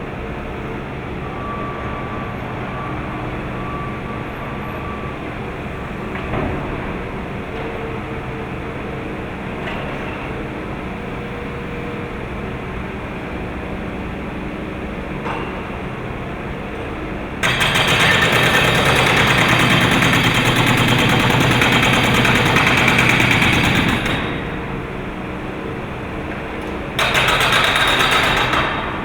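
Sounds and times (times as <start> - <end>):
hydraulic breaker hammering: 17.4 - 25.2, 26.9 - 29.0.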